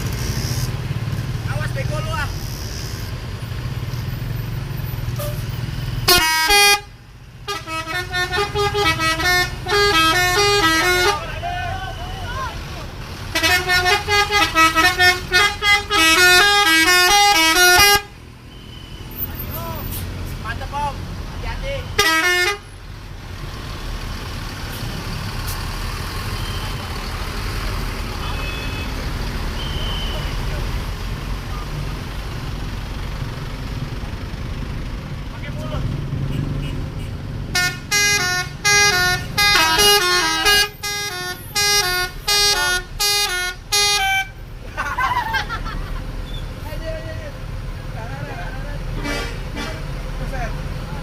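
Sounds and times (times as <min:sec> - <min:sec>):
bus engine rumbling: 0:00.0 - 0:51.0
road noise: 0:00.0 - 0:51.0
musical bus horn playing notes: 0:06.1 - 0:06.9, 0:07.5 - 0:11.3, 0:13.3 - 0:18.2, 0:22.0 - 0:22.7, 0:37.5 - 0:44.4, 0:49.0 - 0:49.9.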